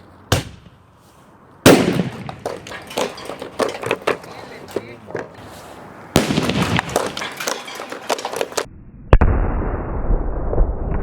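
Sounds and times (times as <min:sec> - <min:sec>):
firework exploding: 0:01.6 - 0:02.5, 0:06.1 - 0:11.0.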